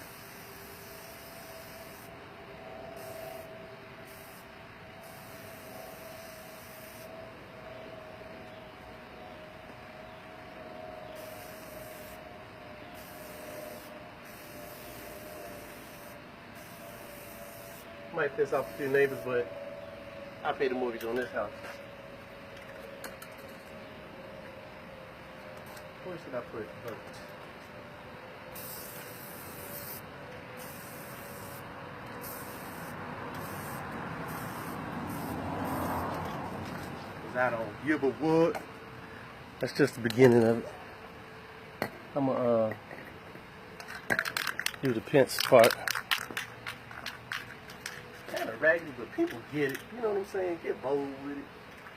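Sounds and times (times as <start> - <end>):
spray can hissing: 0.0 - 2.1, 4.1 - 7.1, 11.2 - 12.2, 13.0 - 17.9, 28.5 - 36.2
steady hum: 0.0 - 42.7.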